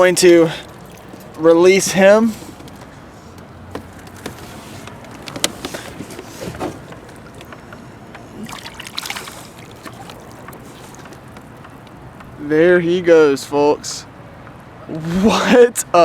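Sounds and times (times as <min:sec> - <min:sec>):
water splashing and sloshing: 0:00.0 - 0:12.5.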